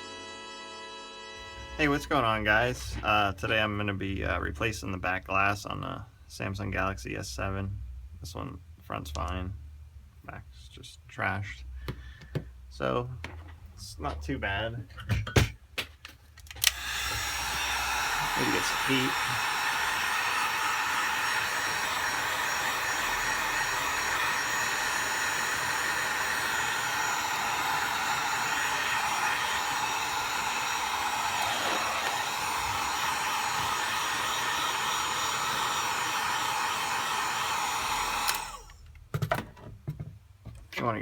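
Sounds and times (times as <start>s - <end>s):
hot-air blower running: 16.6s - 38.8s.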